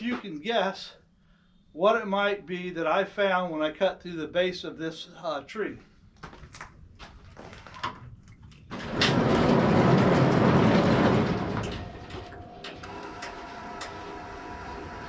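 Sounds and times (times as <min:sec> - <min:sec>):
band sawmill running: 0:08.8 - 0:15.0.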